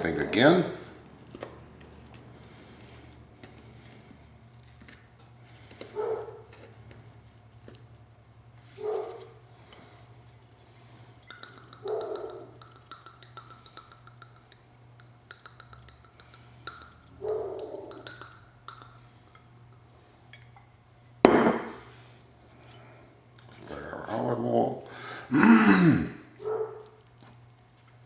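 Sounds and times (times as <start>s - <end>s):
utensils clinking on glass bowl: 11.2s - 14.6s, 15.3s - 19.5s
loud sharp knock: 21.3s - 21.8s.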